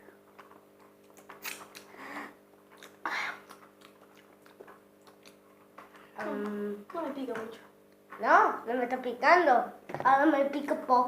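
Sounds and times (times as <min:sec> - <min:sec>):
lip smacks and clicks: 0:00.4 - 0:02.0, 0:02.7 - 0:06.6.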